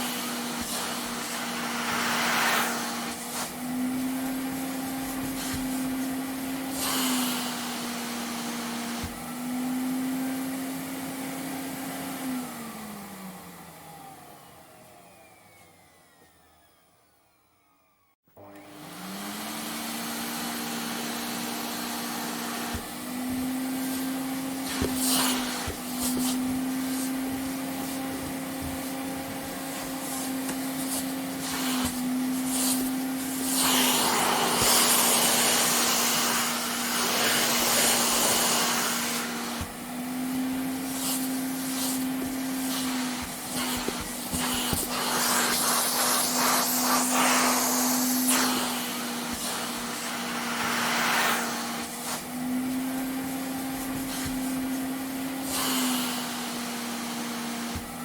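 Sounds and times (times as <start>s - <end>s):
vacuum suction rushing: 0.0s - 7.9s, 22.4s - 57.1s
vacuum cleaner motor whine: 0.0s - 58.0s.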